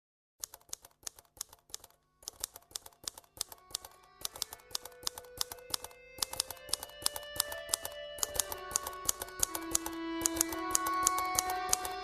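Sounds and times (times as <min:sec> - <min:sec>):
typewriter keys clacking: 0:00.4 - 0:12.0
held musical notes: 0:03.6 - 0:12.0.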